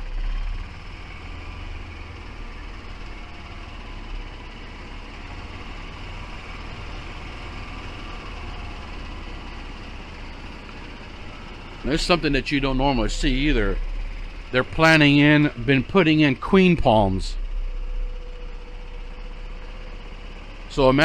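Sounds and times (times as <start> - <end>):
vehicle driving slowly: 0.0 - 21.0.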